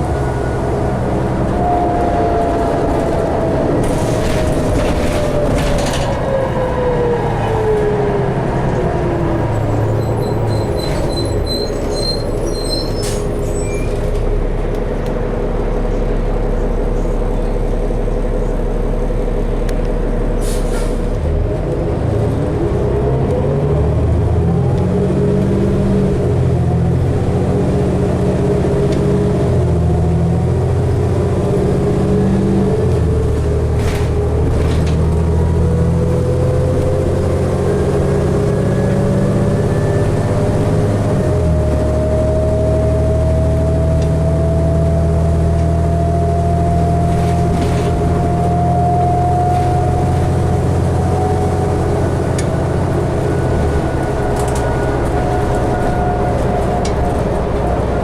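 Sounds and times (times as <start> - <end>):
bus engine humming: 0.0 - 58.0
rising whine: 35.1 - 58.0.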